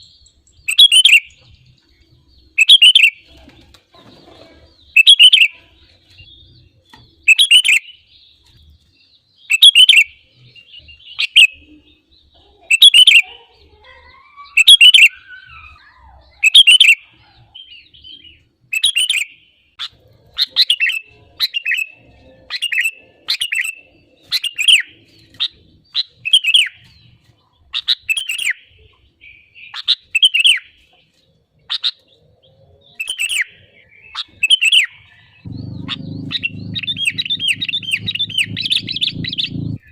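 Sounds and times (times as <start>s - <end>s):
bulbul chirping: 35.5s - 39.9s.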